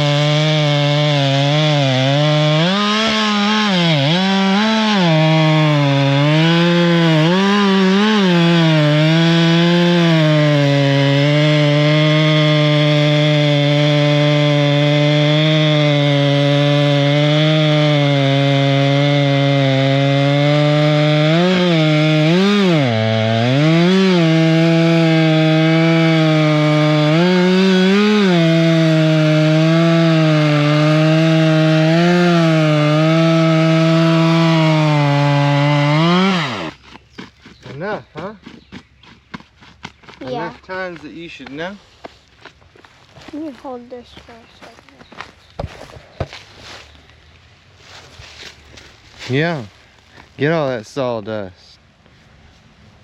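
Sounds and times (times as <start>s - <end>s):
chainsaw cutting wood: 0.0s - 41.7s.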